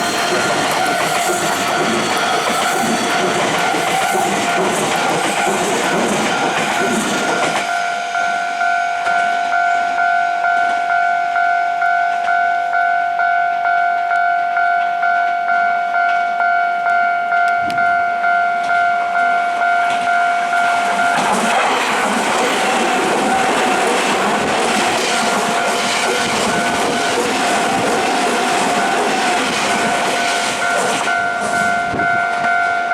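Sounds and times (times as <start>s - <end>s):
level crossing bell ringing: 0.0s - 21.6s, 22.2s - 32.9s
train noise: 0.0s - 32.9s
passing traffic rushing: 19.1s - 32.0s.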